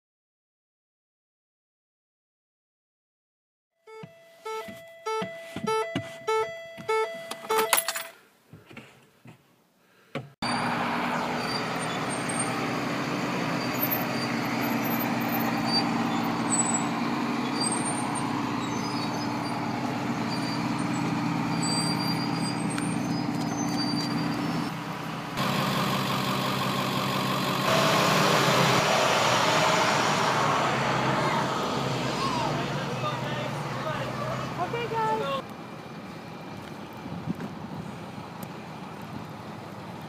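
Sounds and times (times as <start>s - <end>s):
large vehicle engines humming: 10.4s - 40.0s
brief high squeaks: 20.3s - 24.7s.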